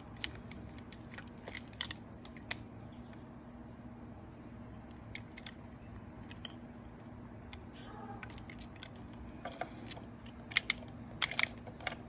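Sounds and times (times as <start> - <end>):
lock parts and tools clicking: 0.0 - 2.7, 4.8 - 5.6, 6.2 - 12.0
faint steady hum: 0.0 - 12.0.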